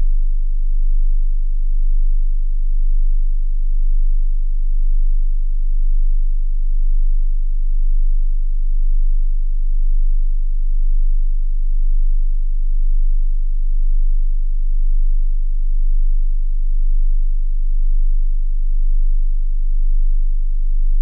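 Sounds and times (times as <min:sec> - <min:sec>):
low sine test tone: 0:00.0 - 0:21.0.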